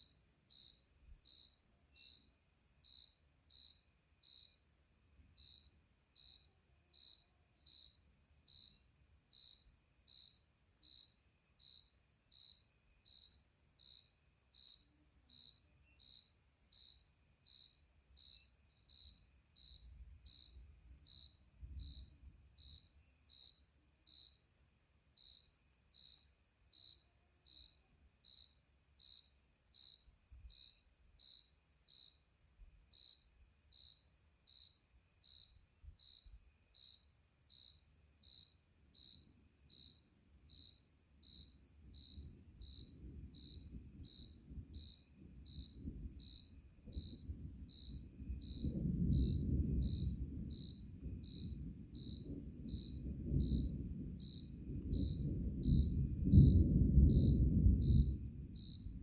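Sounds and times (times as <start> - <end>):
cricket chirping: 0.0 - 59.0
faint low rumble: 41.4 - 59.0.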